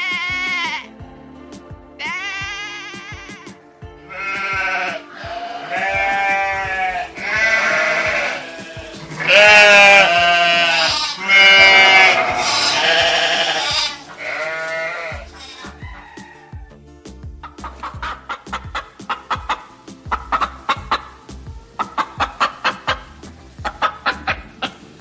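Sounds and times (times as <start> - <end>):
sheep bleating: 0.0 - 1.0, 2.0 - 16.0
background music: 0.0 - 25.0.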